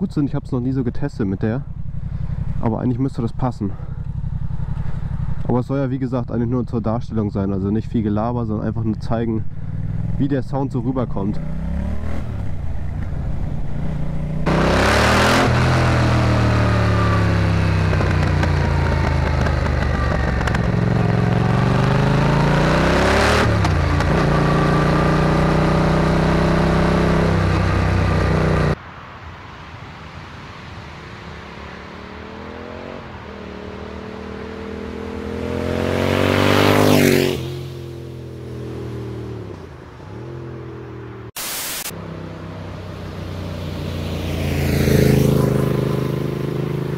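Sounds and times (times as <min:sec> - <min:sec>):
motorcycle engine accelerating: 0:00.0 - 0:28.8, 0:31.4 - 0:41.4, 0:42.0 - 0:46.9
motorcycle passing by: 0:01.4 - 0:06.6, 0:08.8 - 0:28.8, 0:30.7 - 0:41.3, 0:42.0 - 0:46.9.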